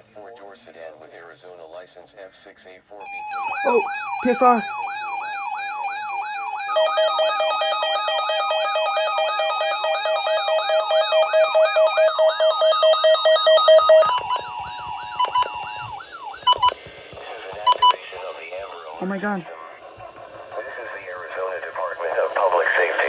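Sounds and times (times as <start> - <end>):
siren-like sweeping alarm tone: 3.0 - 16.8
rapid pulsing beeps: 3.1 - 5.2, 6.6 - 16.8, 17.6 - 18.0.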